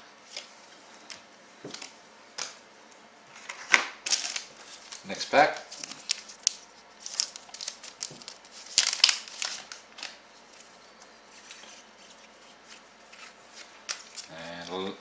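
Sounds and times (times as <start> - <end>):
faint rustling of cards: 3.3 - 15.0
card packet wrapper tearing: 4.0 - 10.2.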